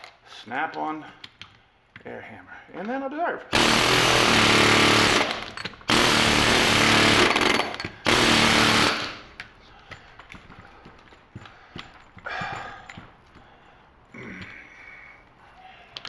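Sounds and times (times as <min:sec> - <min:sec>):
air hammer hammering steel: 0:03.5 - 0:09.3.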